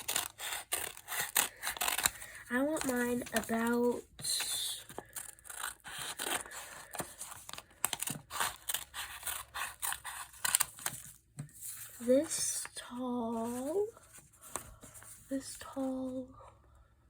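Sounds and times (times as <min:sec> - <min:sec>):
scissors cutting paper: 0:00.0 - 0:03.7, 0:04.4 - 0:11.1.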